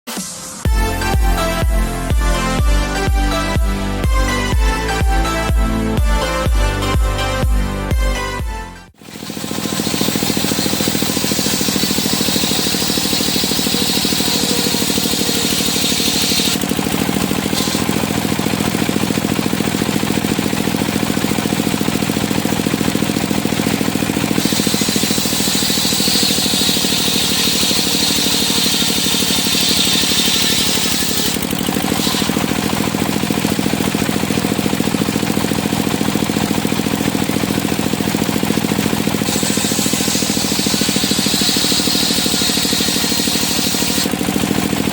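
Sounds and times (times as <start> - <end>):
sawmill engine running: 0.6 - 44.9
high saw whine: 9.0 - 44.9.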